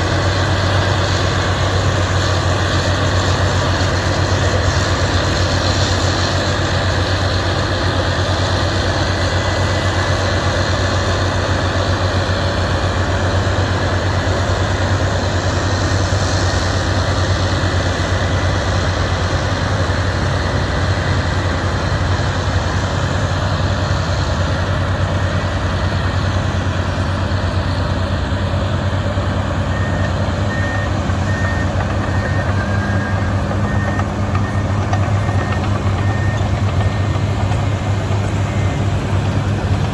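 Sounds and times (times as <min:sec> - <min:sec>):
diesel machinery engine drone: 0:00.0 - 0:39.9
faint reversing alarm beeps: 0:29.6 - 0:39.9.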